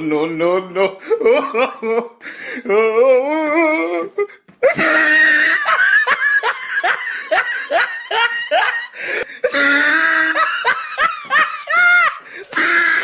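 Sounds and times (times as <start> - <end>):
person laughing loudly: 0.9 - 13.0.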